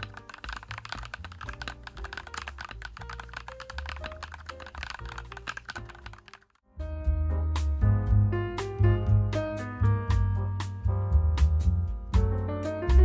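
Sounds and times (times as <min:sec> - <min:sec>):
mechanical keyboard typing: 0:00.0 - 0:06.6
background music: 0:00.0 - 0:13.0.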